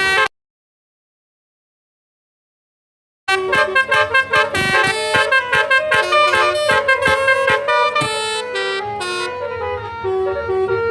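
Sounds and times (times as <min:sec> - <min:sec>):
multi-trumpet horn playing a tune: 0:00.0 - 0:00.3, 0:03.3 - 0:10.9.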